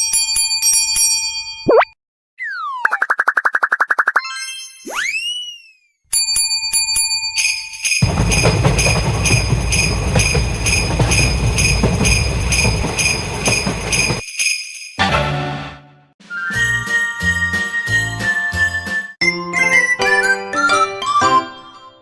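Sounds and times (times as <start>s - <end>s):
railway crossing bell dinging: 6.1s - 14.2s
loud rushing rumble: 8.0s - 14.2s.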